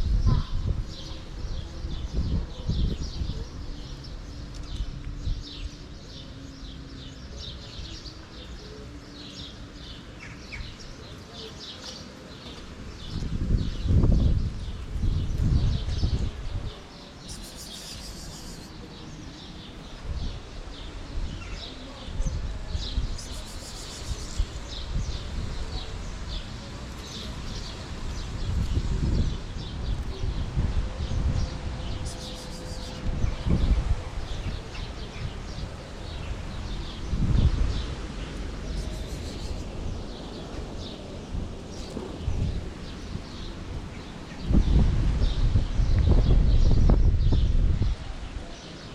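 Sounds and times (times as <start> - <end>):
wind rumble on microphone: 0.0 - 11.2, 12.6 - 48.9
small birds chirping: 0.1 - 48.9.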